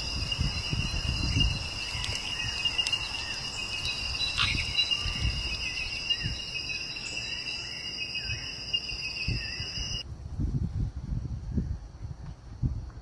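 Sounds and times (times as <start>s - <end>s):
insects trilling: 0.0s - 10.0s.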